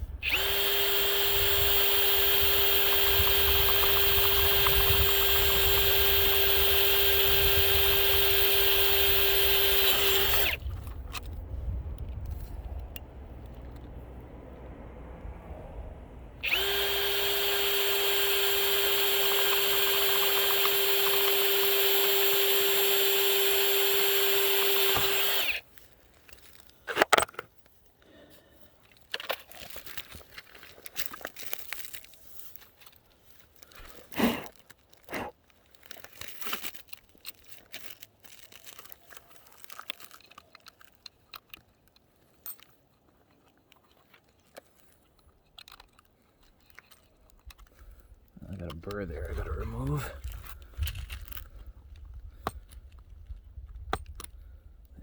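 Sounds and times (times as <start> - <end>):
electric drill whining: 0.0 - 11.3, 16.4 - 25.7.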